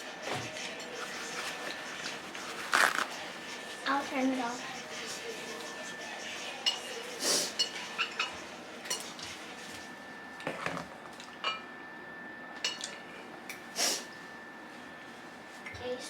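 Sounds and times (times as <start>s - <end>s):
utensils clinking on plates: 0.3s - 4.0s, 5.1s - 11.7s, 12.6s - 13.7s
utensils scraping plates: 0.5s - 9.9s.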